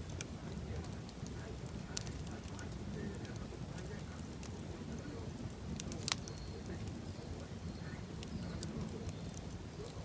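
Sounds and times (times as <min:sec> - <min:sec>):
fire rumbling and crackling: 0:00.0 - 0:10.0.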